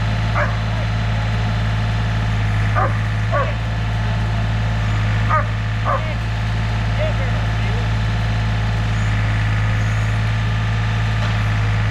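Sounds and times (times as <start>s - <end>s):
diesel engine humming: 0.0s - 11.9s
dog barking: 0.3s - 0.9s, 2.7s - 3.6s, 5.3s - 6.2s.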